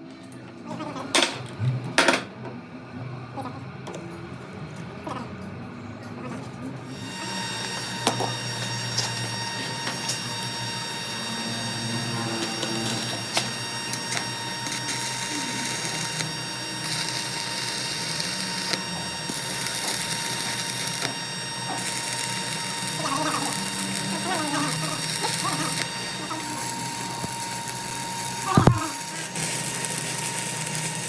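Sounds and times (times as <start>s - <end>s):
machinery whining: 6.9s - 31.0s.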